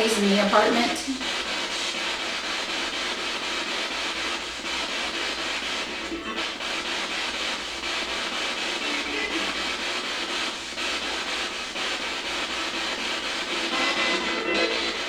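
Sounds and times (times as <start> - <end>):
broadcast fragments: 0.0 - 15.0
radio static: 0.0 - 15.0.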